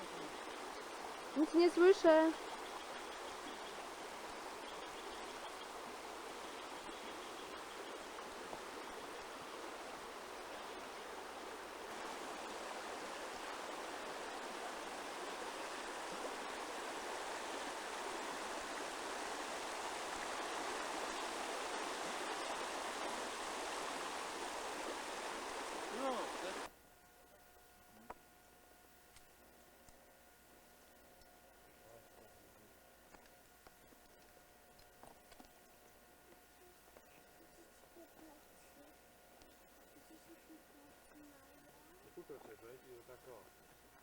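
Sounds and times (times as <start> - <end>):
running water rushing: 0.0 - 26.7.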